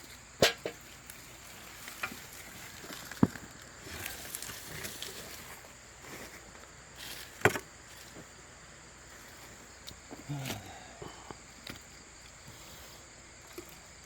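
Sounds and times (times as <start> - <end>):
high insect drone: 0.0 - 14.0
rustling in soil: 0.0 - 14.0.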